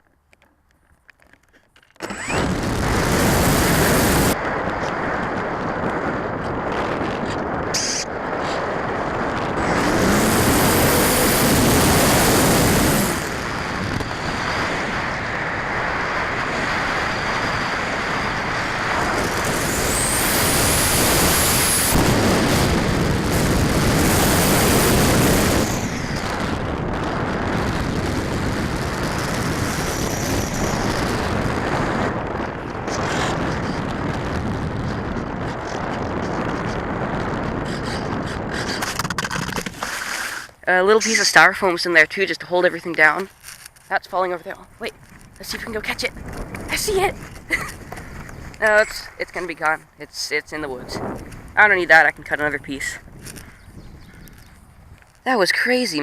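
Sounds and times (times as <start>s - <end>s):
faint electric motor whine: 2.0s - 6.6s, 8.9s - 35.4s
wind buffeting microphone: 2.0s - 56.0s.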